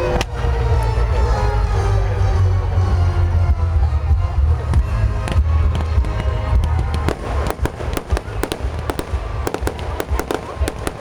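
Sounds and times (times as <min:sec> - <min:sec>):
fireworks exploding: 0:04.8 - 0:11.0
dense crackle of sharp pops: 0:05.8 - 0:11.0.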